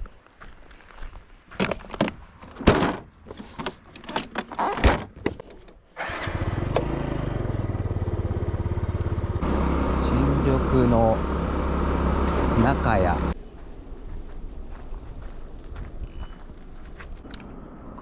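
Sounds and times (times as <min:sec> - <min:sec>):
outboard motor running: 0:06.2 - 0:13.4.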